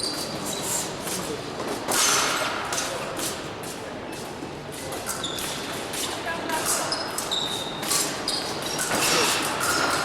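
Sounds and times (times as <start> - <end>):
shoes stamping and squeaking: 6.8 - 10.0.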